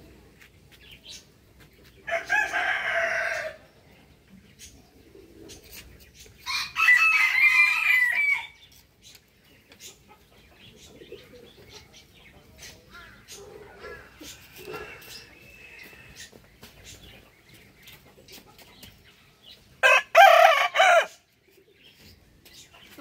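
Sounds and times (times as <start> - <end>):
rooster crowing: 2.1 - 3.6, 6.5 - 8.6, 19.8 - 21.2.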